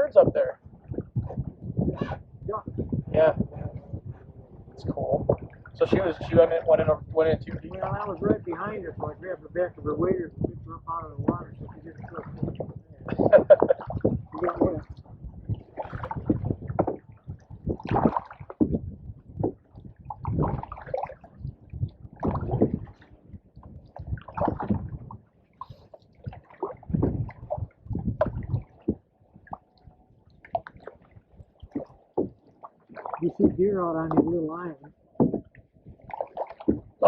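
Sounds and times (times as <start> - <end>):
paddle splashing in water: 5.2 - 6.7, 11.2 - 37.0.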